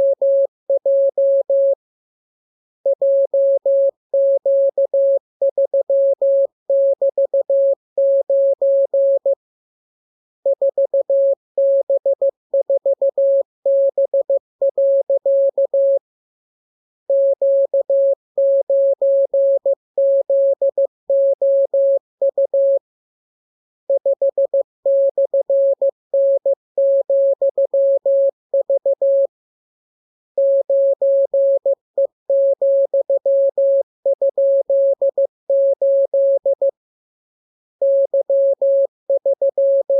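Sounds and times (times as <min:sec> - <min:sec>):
morse code beeps: 0:37.8 - 0:39.9.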